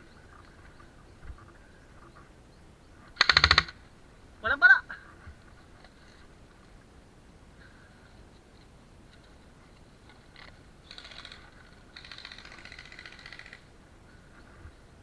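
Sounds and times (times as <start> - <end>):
airsoft gun rapid-fire bursts: 3.2 - 3.8, 10.8 - 13.6.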